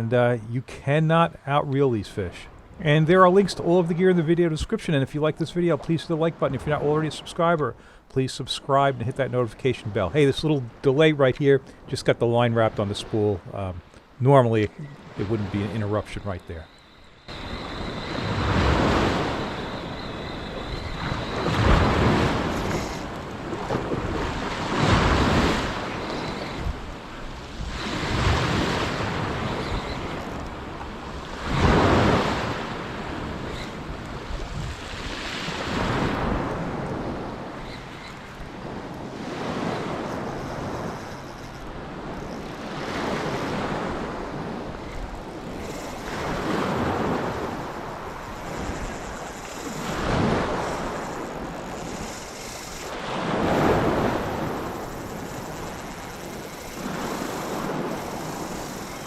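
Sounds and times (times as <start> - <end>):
small surf breaking on beach: 14.4 - 59.0
wind buffeting microphone: 16.5 - 59.0.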